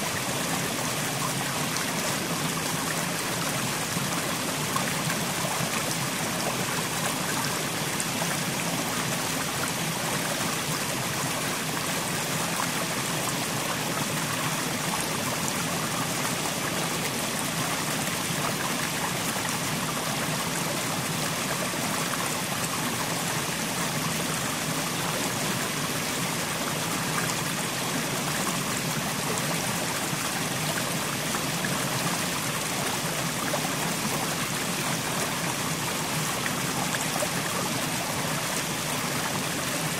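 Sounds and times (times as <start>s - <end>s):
stream running over stones: 0.0s - 39.9s.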